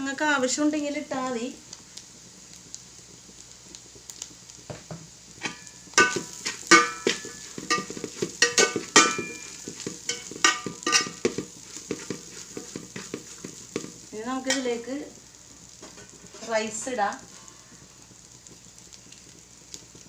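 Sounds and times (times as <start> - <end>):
light sizzle: 0.0 - 20.0
utensil knocking and scraping pan: 5.4 - 14.8.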